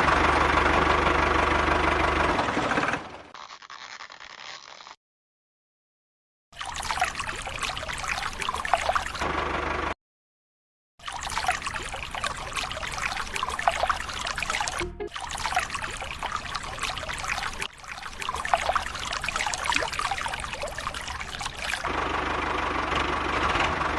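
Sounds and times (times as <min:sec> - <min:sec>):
water pouring onto plants: 0:06.6 - 0:09.2, 0:11.0 - 0:21.9.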